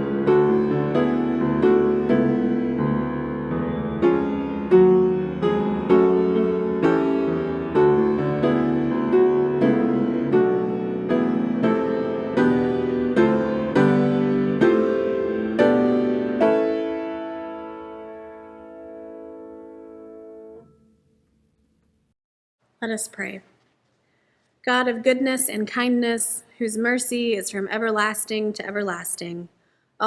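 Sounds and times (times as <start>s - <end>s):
slow gentle piano piece: 0.0s - 21.0s.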